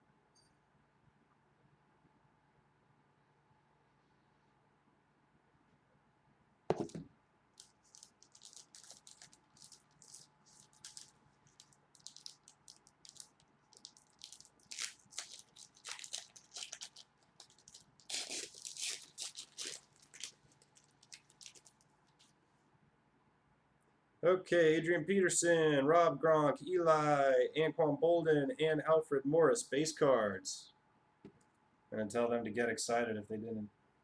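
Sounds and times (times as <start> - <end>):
thump: 6.7 - 7.1
foil wrapper crinkling and tearing: 7.6 - 22.3.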